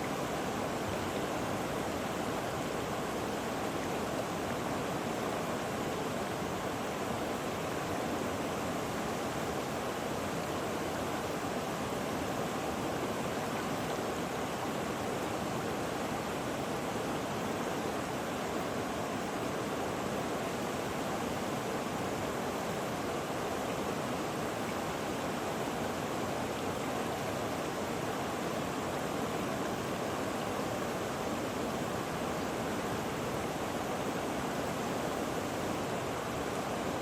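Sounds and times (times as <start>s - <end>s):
rushing water hiss: 0.0s - 37.0s.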